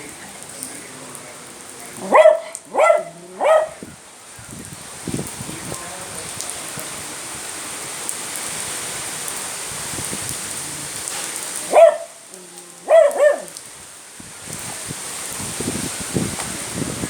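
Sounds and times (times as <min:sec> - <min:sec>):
steady rain hiss: 0:00.0 - 0:17.0
dog barking: 0:02.0 - 0:03.8, 0:11.6 - 0:12.2, 0:12.8 - 0:13.6.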